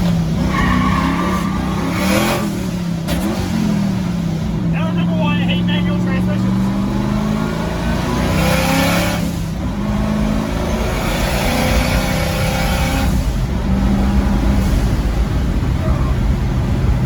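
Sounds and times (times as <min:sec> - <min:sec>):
vee eight engine accelerating: 0:00.0 - 0:17.0.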